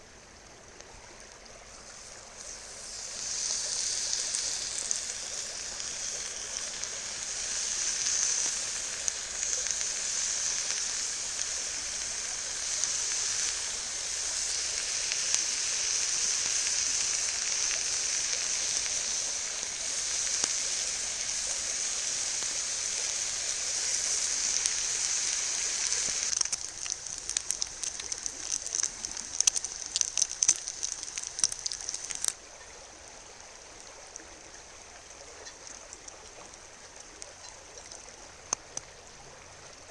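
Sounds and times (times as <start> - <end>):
bacon sizzling: 1.2 - 32.4
fat spattering pops: 25.8 - 32.3.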